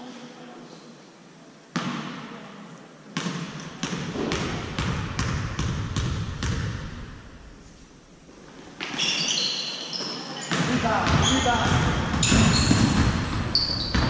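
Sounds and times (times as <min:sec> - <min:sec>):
basketball bouncing on gym floor: 0:03.2 - 0:07.1, 0:10.5 - 0:14.0.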